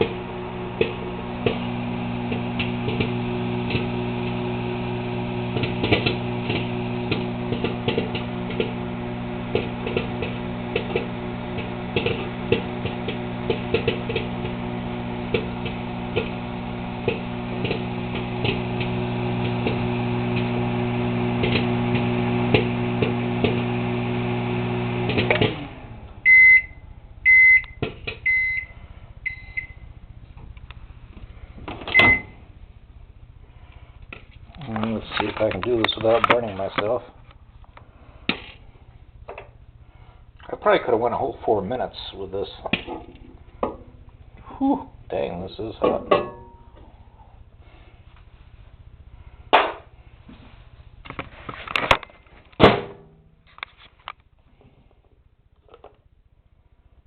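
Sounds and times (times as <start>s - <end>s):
popcorn popping: 0.0s - 26.7s, 42.6s - 45.1s, 49.5s - 50.0s
microwave oven humming: 0.0s - 51.1s
microwave beeps: 26.2s - 30.0s, 31.8s - 32.4s.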